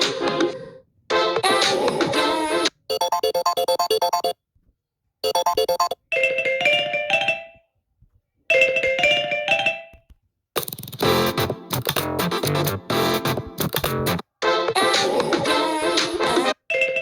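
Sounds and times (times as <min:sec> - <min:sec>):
electronic ringtone notes: 0:05.2 - 0:07.6
chiming ringtone melody: 0:05.2 - 0:07.7, 0:08.5 - 0:10.1, 0:16.7 - 0:17.0.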